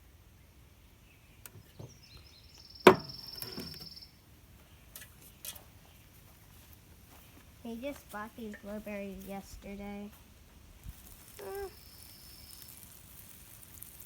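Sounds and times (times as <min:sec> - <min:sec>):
sharp knock: 0:02.9 - 0:03.7.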